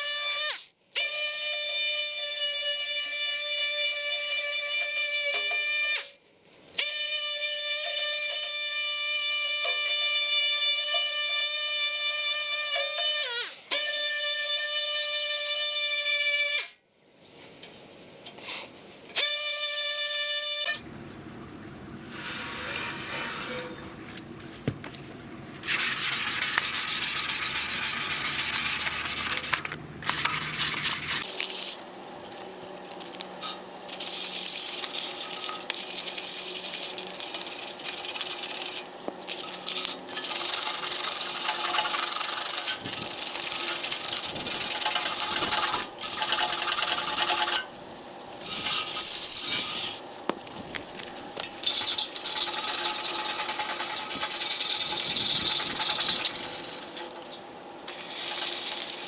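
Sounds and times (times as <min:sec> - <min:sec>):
sanding on metal jerry can: 0:25.6 - 0:31.8, 0:33.9 - 0:38.9, 0:40.2 - 0:47.6, 0:48.4 - 0:50.0, 0:51.6 - 0:57.2, 0:57.9 - 0:59.0.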